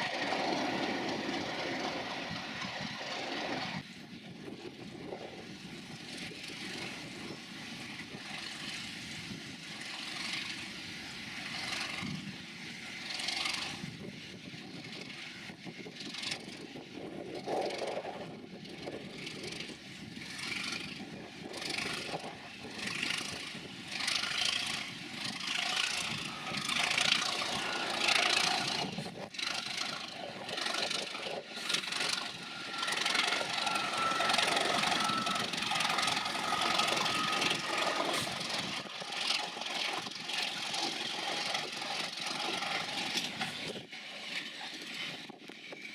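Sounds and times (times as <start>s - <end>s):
diesel locomotive engine: 0.0s - 45.9s
steady whine: 17.2s - 45.9s.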